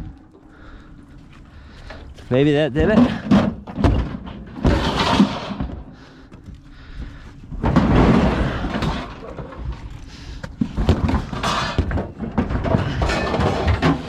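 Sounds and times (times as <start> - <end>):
refrigerator door banging and clattering: 2.8 - 5.9, 10.8 - 14.0.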